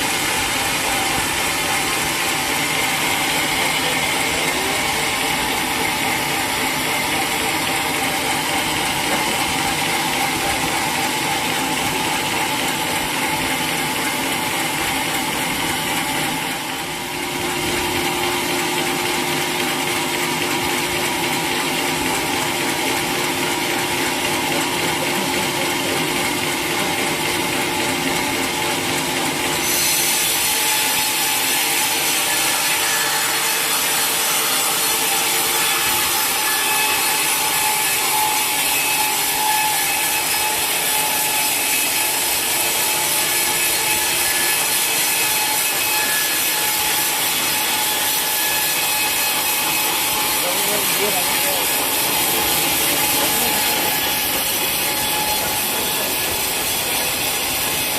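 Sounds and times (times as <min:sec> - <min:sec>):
sawmill machinery clatter and whir: 0:00.0 - 0:57.9.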